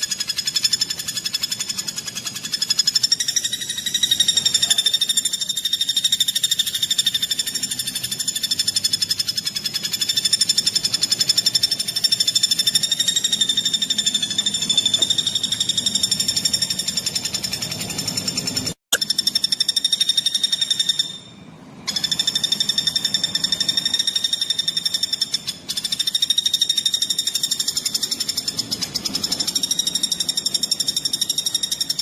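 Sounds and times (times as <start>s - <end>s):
songbird fast high trill: 0.0s - 32.0s.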